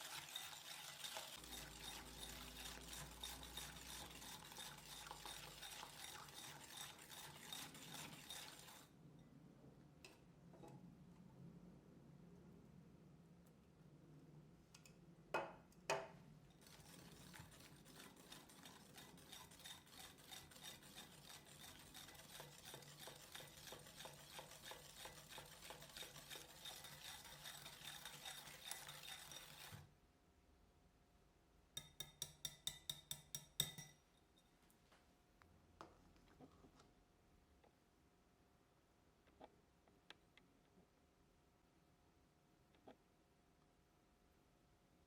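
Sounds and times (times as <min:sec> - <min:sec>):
utensil scraping mixing bowl: 0:00.0 - 0:09.0, 0:16.6 - 0:29.9.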